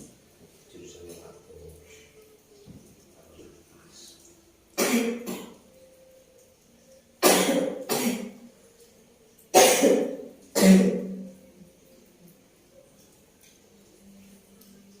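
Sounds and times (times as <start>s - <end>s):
woman coughing: 9.6s - 11.1s.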